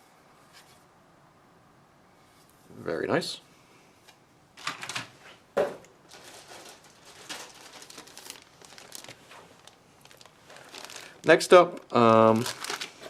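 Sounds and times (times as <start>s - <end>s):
plastic bag crinkling: 6.0s - 13.0s.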